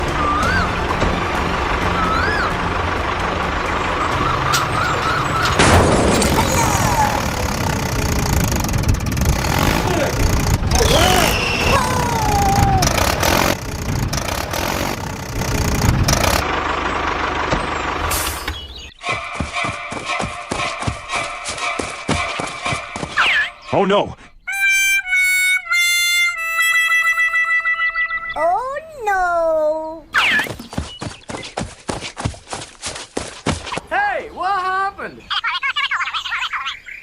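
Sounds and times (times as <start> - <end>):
construction vehicle engines running: 0.0 - 23.2
loud knocks and clanks: 0.6 - 2.0, 2.6 - 11.3
short squeaky gliding sounds: 9.5 - 11.8.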